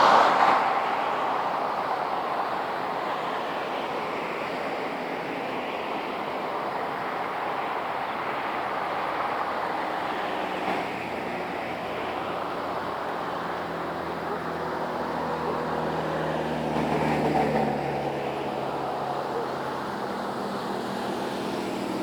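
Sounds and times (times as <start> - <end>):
tyre and road noise: 0.0 - 22.0
vehicle engine passing close: 13.6 - 22.0.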